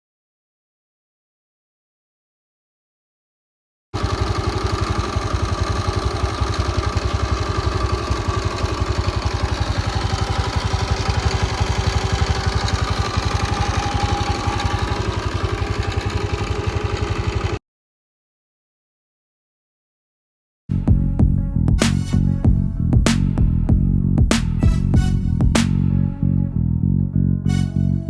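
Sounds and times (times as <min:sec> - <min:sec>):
scooter engine pulsing clatter: 0:04.0 - 0:17.6.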